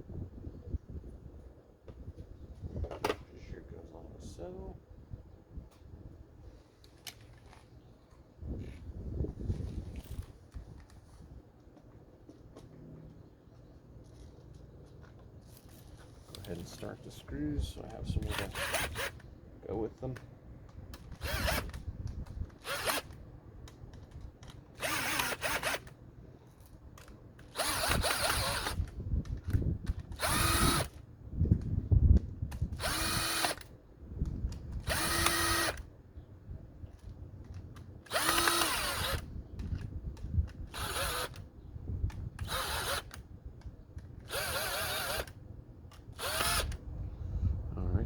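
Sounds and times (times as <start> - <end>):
drill-driver short bursts: 18.2 - 19.2, 21.1 - 21.8, 22.6 - 23.2, 24.8 - 25.9, 27.5 - 28.9, 30.1 - 31.0, 32.7 - 33.7, 34.8 - 35.9, 38.1 - 39.3, 40.7 - 41.4, 42.4 - 43.2, 44.3 - 45.4, 46.2 - 46.8.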